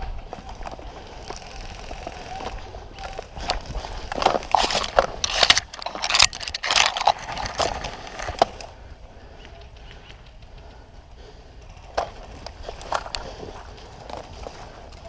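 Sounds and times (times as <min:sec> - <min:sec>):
rustling through brush and dry leaves: 0:00.0 - 0:15.0.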